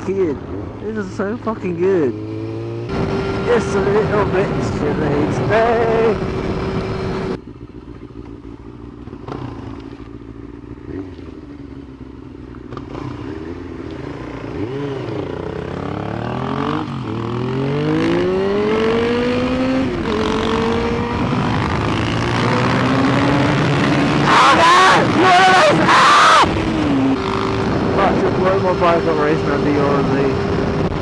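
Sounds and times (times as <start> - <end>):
motorcycle engine revving and accelerating: 1.9 - 31.0.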